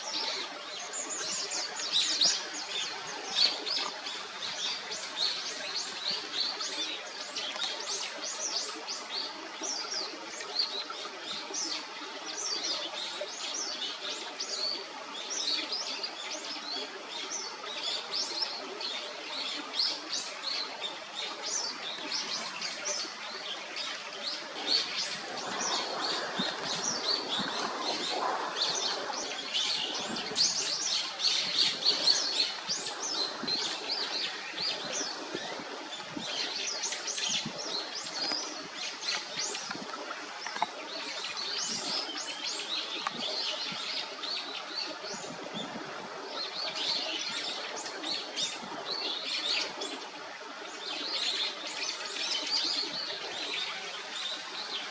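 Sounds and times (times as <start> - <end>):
small birds chirping: 17.9 - 45.7.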